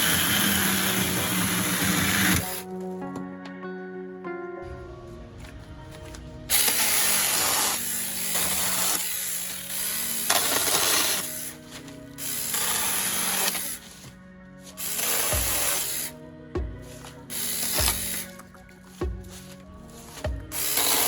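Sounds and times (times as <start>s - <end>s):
chainsaw cutting wood: 0.0s - 2.6s, 6.5s - 13.9s, 14.8s - 16.1s, 17.3s - 18.3s, 20.5s - 21.0s
background music: 0.0s - 21.0s.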